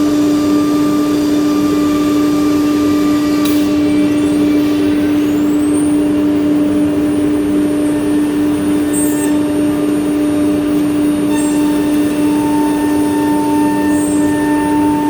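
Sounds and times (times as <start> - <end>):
higher steady tone: 0.0 - 15.0
machine spindle humming: 0.0 - 15.0.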